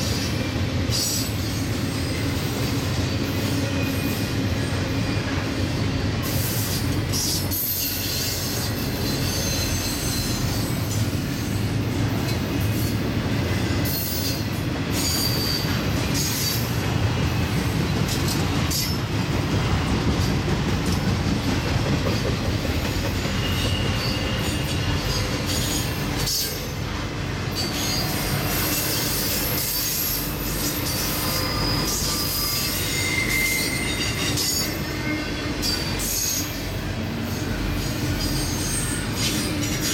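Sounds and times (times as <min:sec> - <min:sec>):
freight train rumbling on rails: 0:00.0 - 0:39.9
high wheel squeals: 0:06.3 - 0:11.7, 0:13.6 - 0:16.8, 0:23.1 - 0:26.8, 0:27.5 - 0:39.9.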